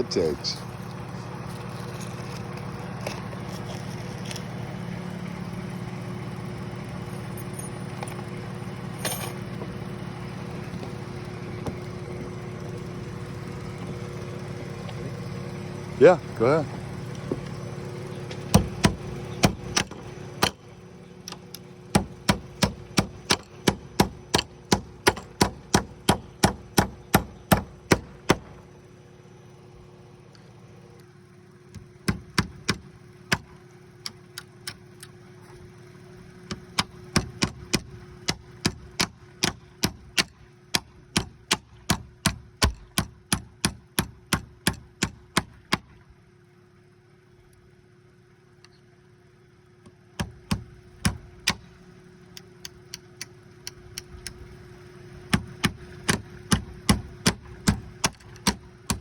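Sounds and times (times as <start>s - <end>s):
hammer driving nails: 21.9s - 28.5s, 55.3s - 59.0s.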